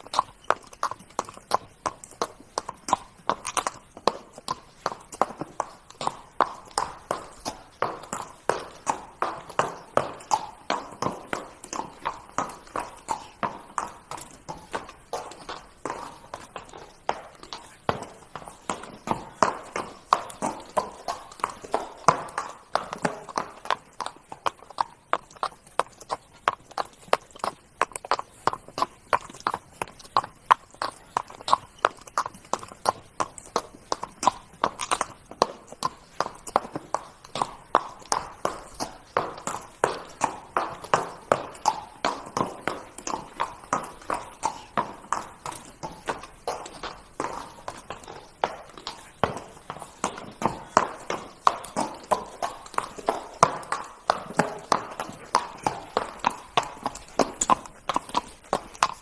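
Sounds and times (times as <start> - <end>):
horse hoofbeats trotting: 0.0 - 59.0.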